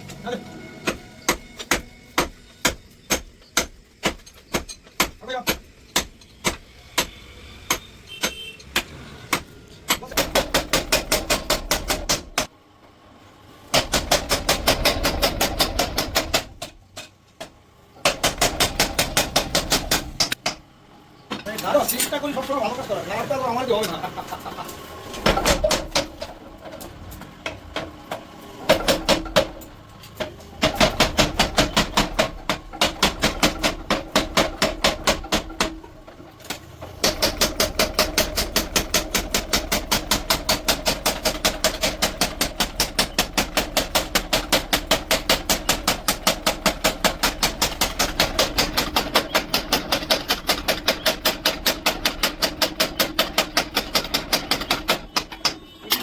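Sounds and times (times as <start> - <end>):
hammer striking steel: 0.0 - 12.5.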